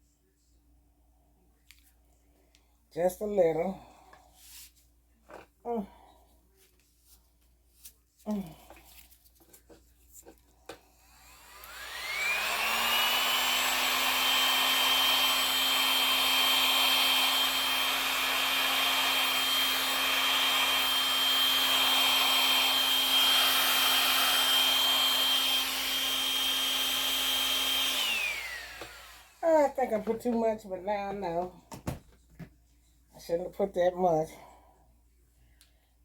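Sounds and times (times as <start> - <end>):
heat gun whining: 11.0 - 30.1.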